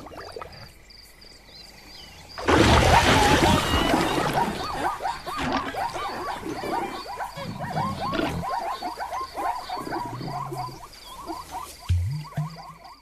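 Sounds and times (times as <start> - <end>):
rising and falling animal calls: 2.6 - 12.9
regular high chirp: 11.2 - 13.0.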